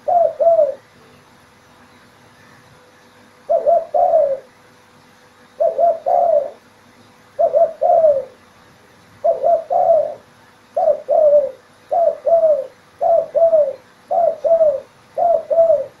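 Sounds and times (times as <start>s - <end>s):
dove cooing: 0.0s - 1.0s, 3.4s - 4.5s, 5.6s - 6.7s, 7.4s - 8.5s, 9.2s - 16.0s.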